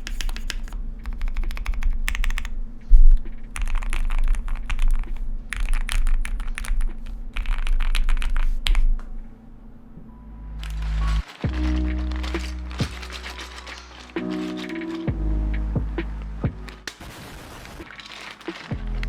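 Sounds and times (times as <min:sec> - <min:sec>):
mechanical keyboard typing: 0:00.0 - 0:02.6, 0:03.5 - 0:08.9, 0:10.6 - 0:15.2.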